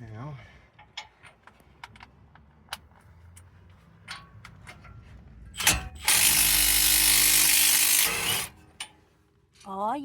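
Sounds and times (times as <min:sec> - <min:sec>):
impact wrench hammering: 0:05.6 - 0:08.6.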